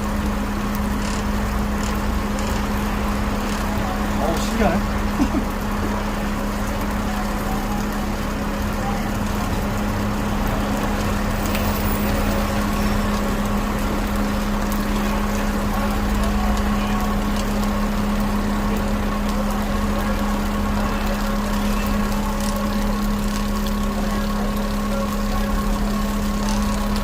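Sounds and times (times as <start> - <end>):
faint ticks: 0.7 - 2.7.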